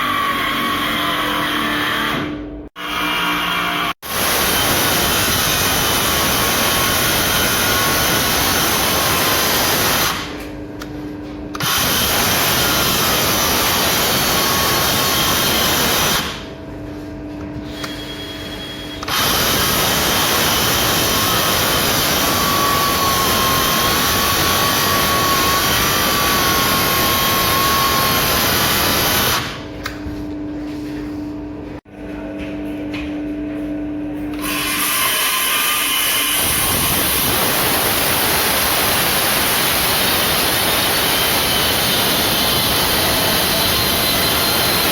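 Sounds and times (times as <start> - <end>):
hammer drill boring into concrete: 4.1 - 10.3, 11.6 - 16.4, 17.8 - 29.6, 34.4 - 44.9.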